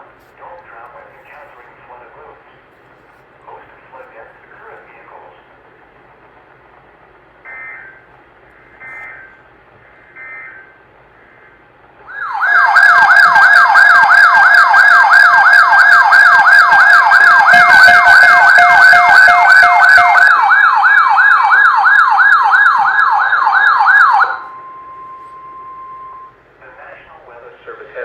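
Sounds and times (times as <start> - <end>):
whooping electronic siren: 12.0 - 26.4
faint steady alert tone: 24.3 - 26.4.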